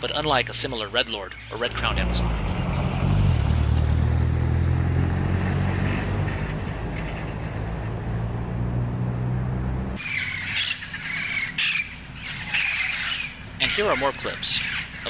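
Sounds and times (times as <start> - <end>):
low engine hum: 1.6 - 13.6
parrot squawking: 10.0 - 15.0.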